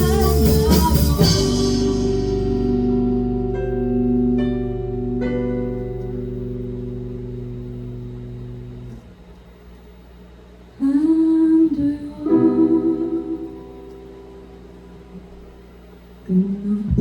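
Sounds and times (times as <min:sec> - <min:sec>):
plucked guitar notes: 0:00.0 - 0:09.0
live band held chord: 0:00.0 - 0:09.2, 0:11.3 - 0:16.3.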